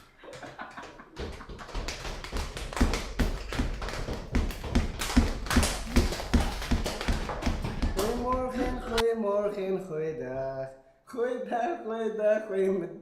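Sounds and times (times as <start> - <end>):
quick tapping and knocking: 1.2 - 8.8.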